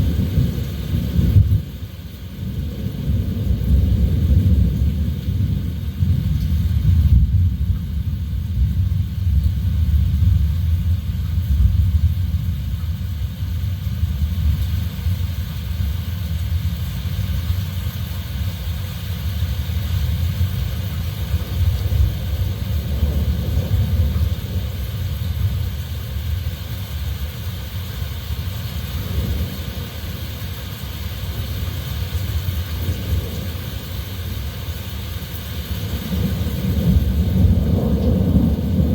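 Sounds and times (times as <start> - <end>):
gusting wind rumble: 0.0 - 38.9
heavy rain hissing: 0.0 - 38.9.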